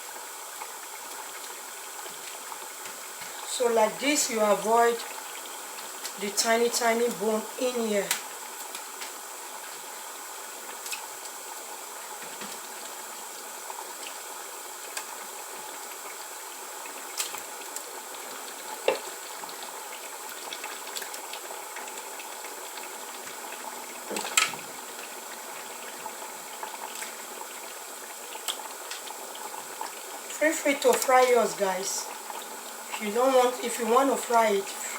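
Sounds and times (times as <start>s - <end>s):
sauce bubbling in a pot: 0.0s - 34.9s.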